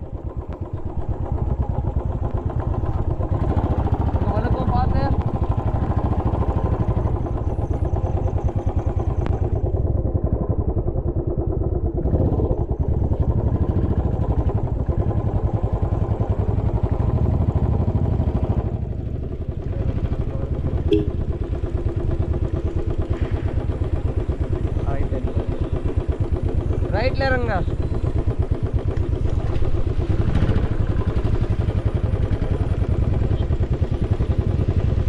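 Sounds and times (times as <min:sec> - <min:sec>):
motorcycle engine running: 0:00.0 - 0:35.0.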